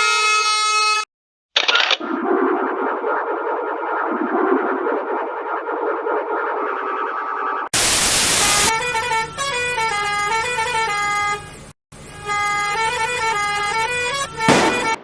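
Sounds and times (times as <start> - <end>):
burst of hiss: 7.8 - 8.7
musical vehicle horn tune: 8.7 - 15.0.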